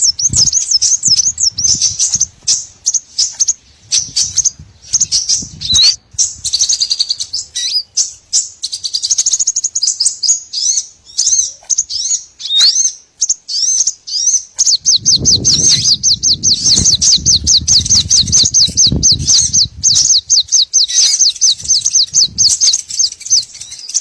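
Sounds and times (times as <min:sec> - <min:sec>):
songbirds chirping and twittering: 0:00.0 - 0:24.0.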